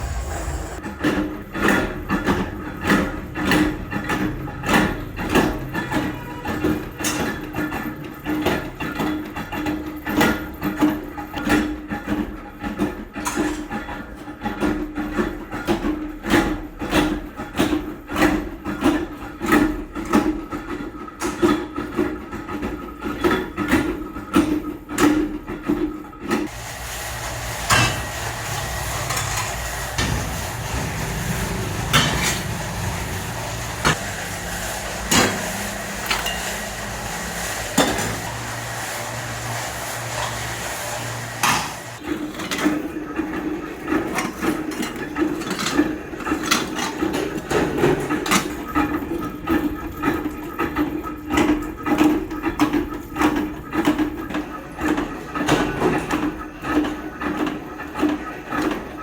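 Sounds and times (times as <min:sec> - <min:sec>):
steady hum: 0:00.0 - 0:00.8, 0:26.5 - 0:42.0
machine running: 0:00.0 - 0:07.6, 0:26.5 - 0:45.2.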